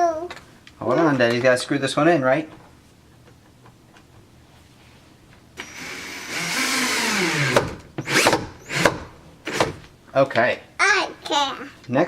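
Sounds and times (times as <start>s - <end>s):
cordless drill driving screw: 5.6s - 9.8s.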